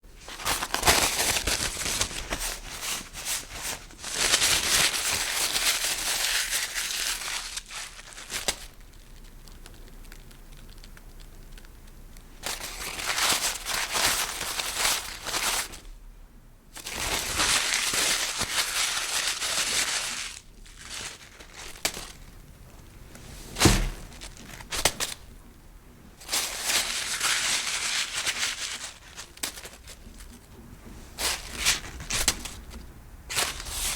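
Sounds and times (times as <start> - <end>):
paper crumpling: 0.2 - 11.7, 12.4 - 15.9, 16.8 - 22.5, 23.1 - 25.3, 26.2 - 30.5, 31.2 - 33.9
sharp thump: 23.6 - 24.2.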